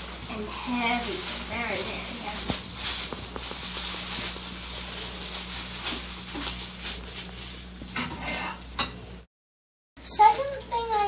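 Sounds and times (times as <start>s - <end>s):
low electrical hum: 0.0s - 9.3s, 10.0s - 11.0s.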